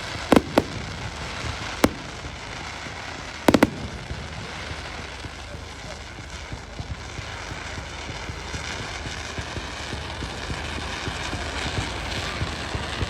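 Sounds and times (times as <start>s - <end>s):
fireworks crackling pops: 0.0s - 5.4s.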